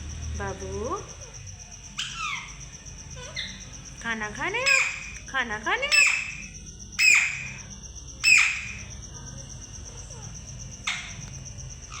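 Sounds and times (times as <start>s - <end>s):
parrot squawking: 1.2s - 3.7s, 4.5s - 5.2s, 5.8s - 7.6s, 8.2s - 8.9s, 10.8s - 11.2s.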